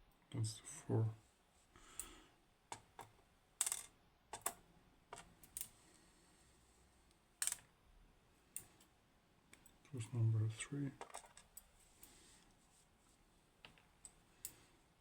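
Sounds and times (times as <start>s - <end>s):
small metallic clicks and taps: 2.7s - 5.8s.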